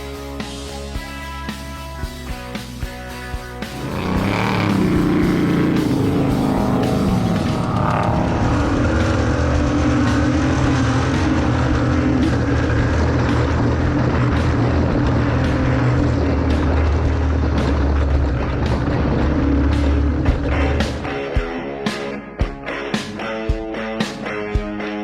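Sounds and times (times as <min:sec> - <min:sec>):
off-road vehicle engine droning: 0:03.6 - 0:22.1.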